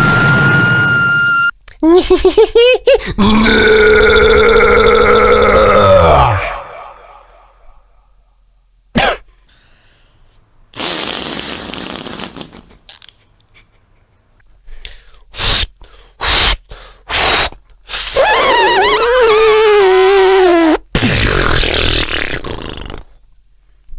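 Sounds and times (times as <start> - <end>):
beatboxing mouth sound effects: 10.8 - 13.1, 15.3 - 23.2.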